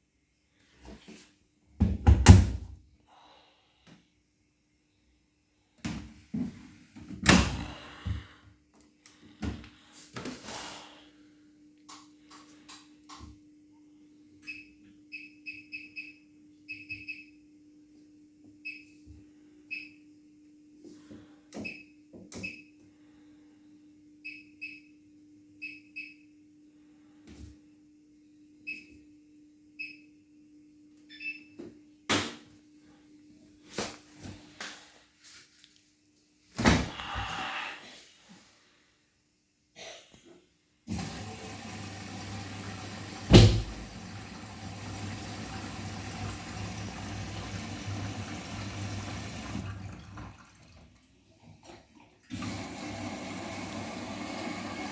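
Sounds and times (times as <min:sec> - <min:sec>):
washing machine clunks and knocks: 0:01.8 - 0:02.8, 0:43.2 - 0:44.1
washing machine button beeps: 0:14.5 - 0:17.3, 0:21.6 - 0:22.7, 0:31.1 - 0:31.6
washing machine door slam: 0:43.3 - 0:44.0.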